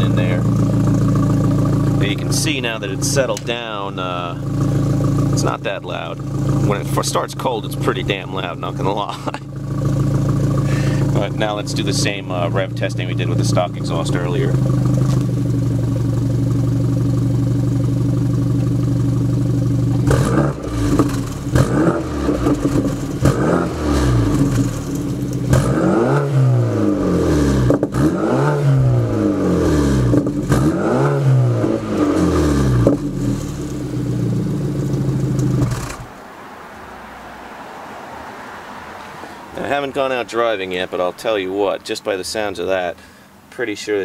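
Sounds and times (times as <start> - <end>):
car engine idling and revving: 0.0 - 41.8.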